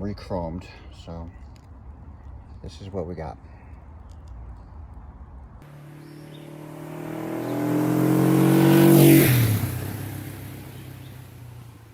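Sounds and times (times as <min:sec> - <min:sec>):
vehicle engine driving past: 0:05.6 - 0:11.9.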